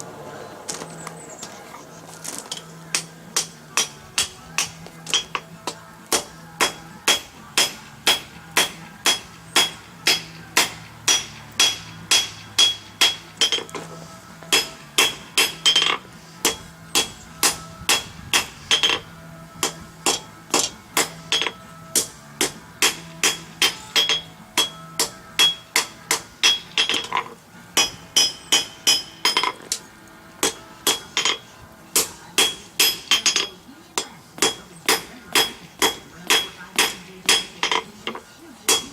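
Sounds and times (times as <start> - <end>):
hammer striking steel on anvil: 2.5 - 38.9.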